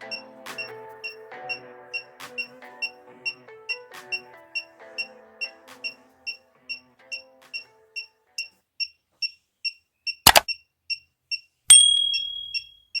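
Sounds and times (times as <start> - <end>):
loud clicks: 10.3 - 10.5
high ringing tone: 11.7 - 13.0.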